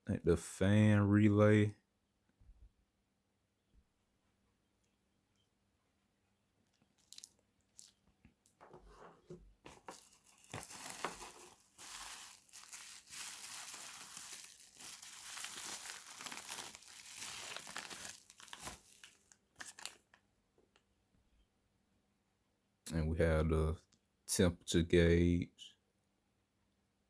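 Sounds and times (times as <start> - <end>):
packaging crinkling and tearing: 7.0 - 8.0, 9.7 - 20.2.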